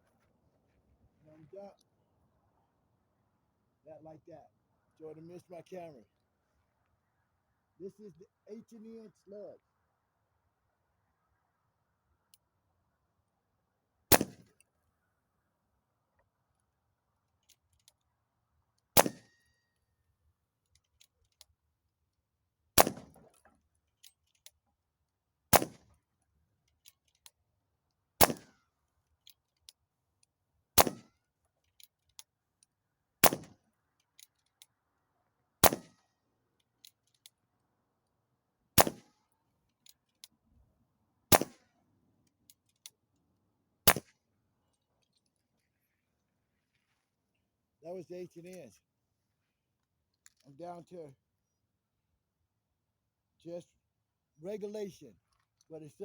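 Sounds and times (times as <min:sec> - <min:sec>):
air rifle shots: 0:14.1 - 0:14.4, 0:22.8 - 0:23.1, 0:41.3 - 0:41.6
faint small clicks: 0:26.6 - 0:28.0.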